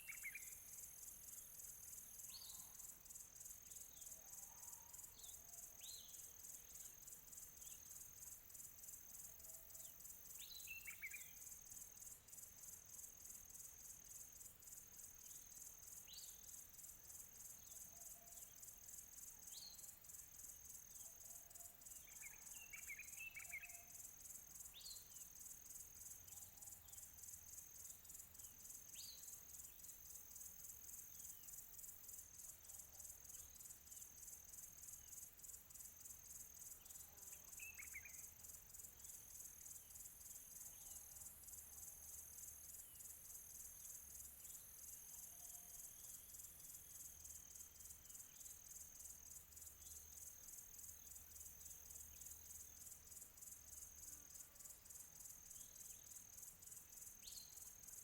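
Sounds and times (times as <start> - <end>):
songbirds chirping: 0.0 - 0.7
insect chorus trilling: 0.0 - 58.0.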